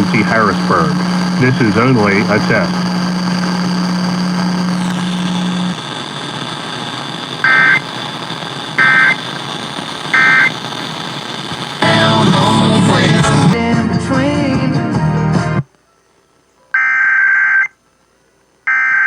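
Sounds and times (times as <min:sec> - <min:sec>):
receiver hiss: 0:00.0 - 0:13.6
steady low hum: 0:00.0 - 0:13.6
warbling data tone bursts: 0:03.0 - 0:12.1.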